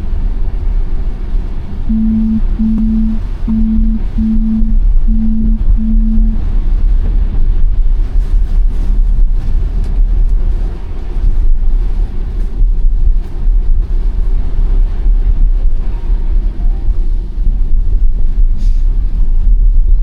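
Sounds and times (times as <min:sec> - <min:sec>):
road and tyre rumble: 0:06.9 - 0:17.6.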